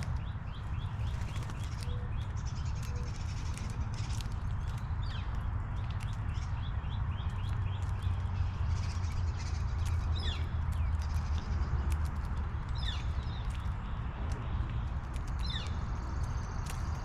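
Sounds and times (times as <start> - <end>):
birds chirping: 0.0 - 11.9.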